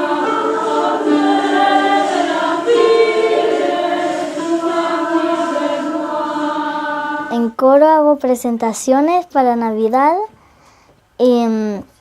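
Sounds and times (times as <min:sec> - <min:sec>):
choir singing sustained chords: 0:00.0 - 0:07.4.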